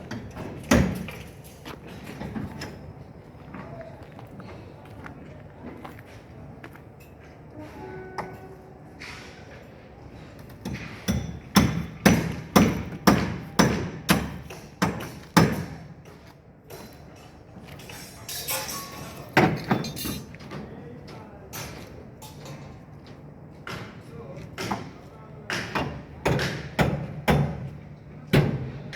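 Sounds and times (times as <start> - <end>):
hammer strikes: 10.6 - 15.8, 25.5 - 27.7.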